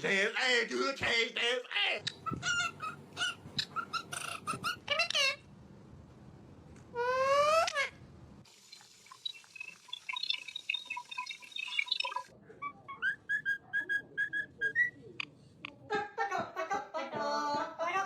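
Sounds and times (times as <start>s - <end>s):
parrot whistling: 10.0s - 15.0s.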